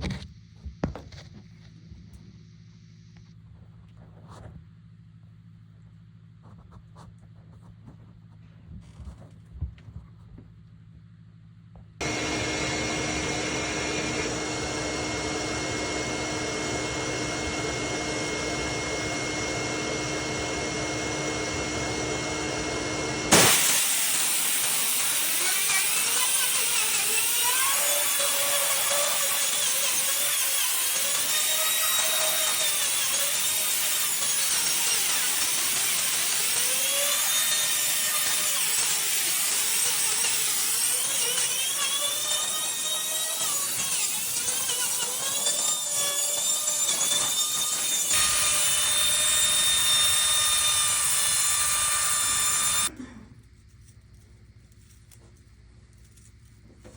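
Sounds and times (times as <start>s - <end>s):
power tool motor running: 12.0s - 52.9s.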